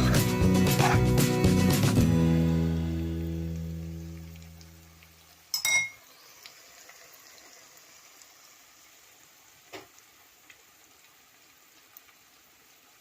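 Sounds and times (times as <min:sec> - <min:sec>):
omelette sizzling in pan: 0:03.1 - 0:13.0
utensil clattering on pan: 0:05.5 - 0:06.0.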